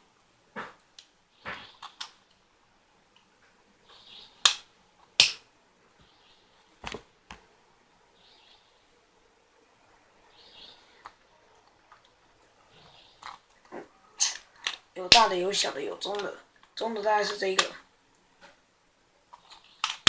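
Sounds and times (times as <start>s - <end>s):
tool pieces clicking and knocking: 19.3s - 20.0s.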